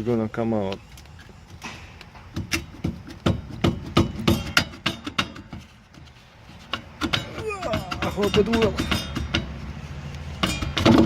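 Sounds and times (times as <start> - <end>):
sharp knocks on metal hub: 1.6 - 5.7, 6.6 - 9.6, 10.4 - 11.0.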